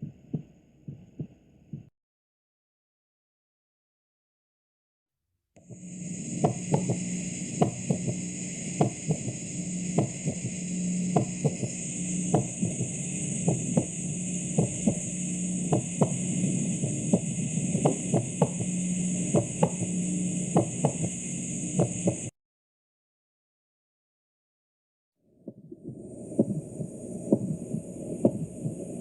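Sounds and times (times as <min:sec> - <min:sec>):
heartbeat: 0:00.0 - 0:01.9, 0:05.7 - 0:21.2, 0:21.8 - 0:22.3, 0:25.4 - 0:29.0
steady hum and hiss: 0:05.6 - 0:22.3, 0:25.8 - 0:29.0.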